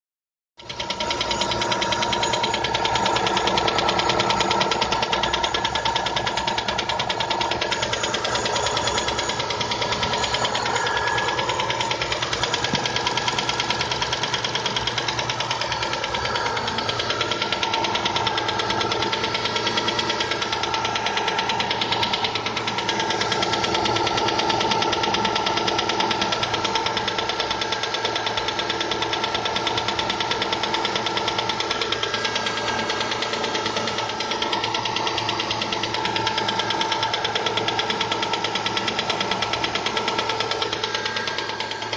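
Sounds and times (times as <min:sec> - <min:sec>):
engine running with rapid knocking: 0:00.6 - 0:41.9.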